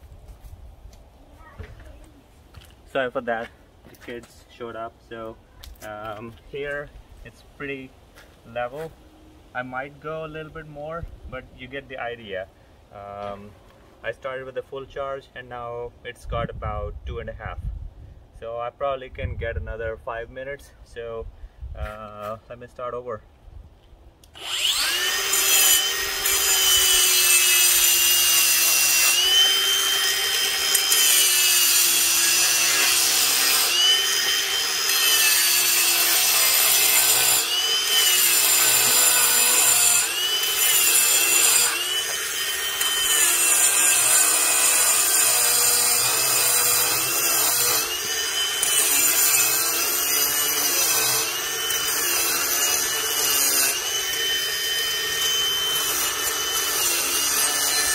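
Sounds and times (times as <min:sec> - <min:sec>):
angle grinder motor whine: 0:24.3 - 0:57.9
blade grinding concrete: 0:24.4 - 0:57.9.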